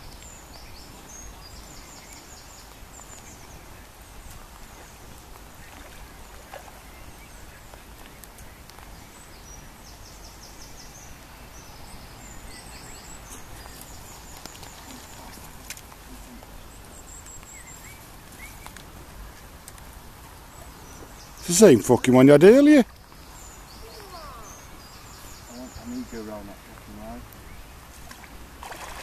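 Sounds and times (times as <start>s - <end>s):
outdoor hiss: 0.0s - 29.0s
faint clicks: 13.6s - 16.5s.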